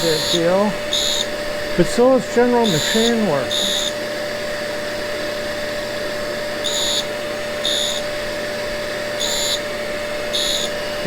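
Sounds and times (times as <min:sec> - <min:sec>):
grinder and vacuum humming: 0:00.0 - 0:11.0
high-pitched grinding bursts: 0:00.0 - 0:11.0.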